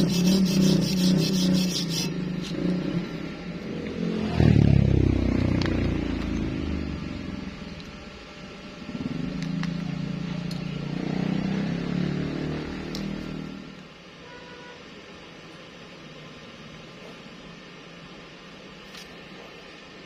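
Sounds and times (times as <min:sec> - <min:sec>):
engine passing by: 0:02.7 - 0:07.4, 0:09.0 - 0:13.6.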